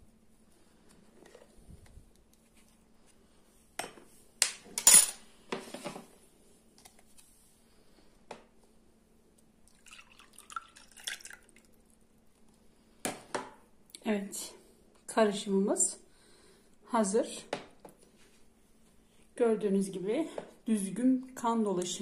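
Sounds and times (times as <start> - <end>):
liquid sloshing: 9.7 - 11.8.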